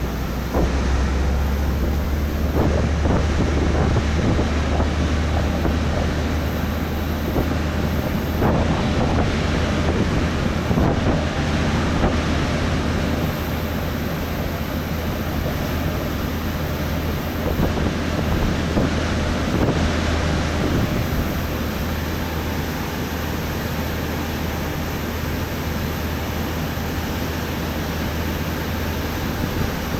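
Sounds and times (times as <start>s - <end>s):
wind buffeting microphone: 0.0s - 22.1s
low engine drone: 0.0s - 29.9s.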